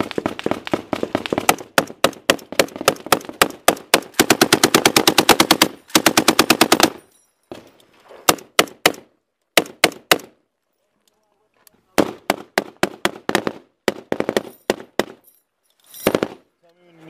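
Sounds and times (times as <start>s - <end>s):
machine gun fire: 0.0s - 7.0s, 12.0s - 15.2s.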